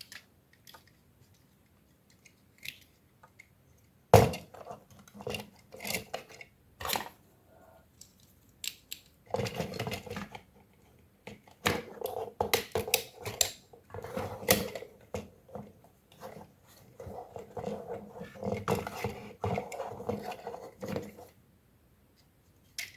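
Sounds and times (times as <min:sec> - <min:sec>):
plastic toy parts clicking: 0:00.0 - 0:01.0, 0:02.1 - 0:03.5, 0:08.0 - 0:09.2.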